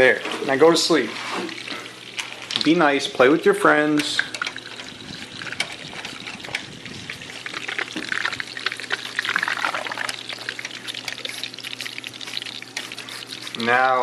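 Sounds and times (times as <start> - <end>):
water splashing and trickling: 0.0 - 13.9
faint pump hum: 0.0 - 14.0.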